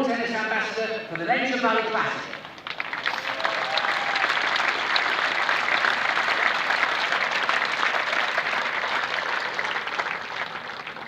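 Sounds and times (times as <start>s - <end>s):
crowd applauding: 2.2s - 11.0s.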